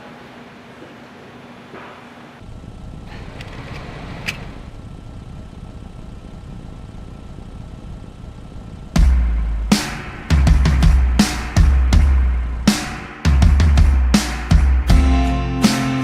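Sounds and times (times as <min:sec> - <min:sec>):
low rumbling noise: 0:02.4 - 0:14.1.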